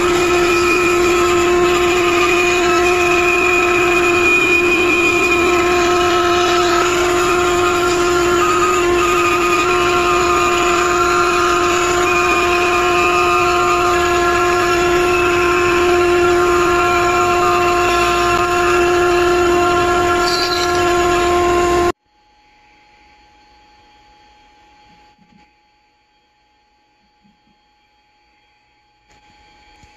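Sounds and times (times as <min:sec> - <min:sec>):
hiss of bit cutting wood: 0:00.0 - 0:21.9
router spindle whine: 0:00.0 - 0:22.0.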